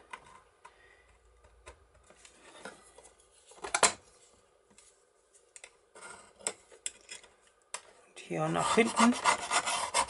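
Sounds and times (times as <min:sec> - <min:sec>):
scriber scratching sheet metal: 0:08.4 - 0:10.0.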